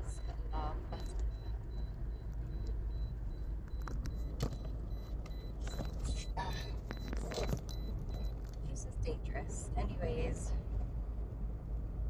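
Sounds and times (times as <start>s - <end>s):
car interior rattles and clicks: 0.0s - 9.4s
car road and engine rumble: 0.0s - 12.0s.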